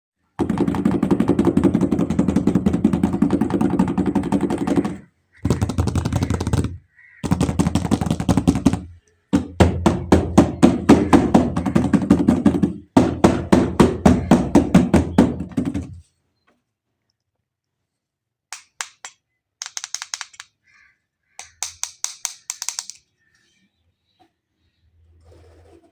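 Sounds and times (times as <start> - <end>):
rattling knocks: 0.4 - 16.0.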